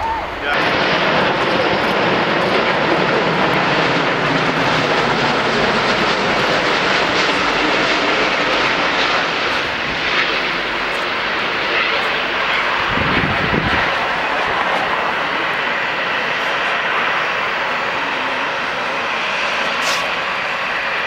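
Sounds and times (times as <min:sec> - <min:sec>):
jet engines roaring: 0:00.0 - 0:21.0.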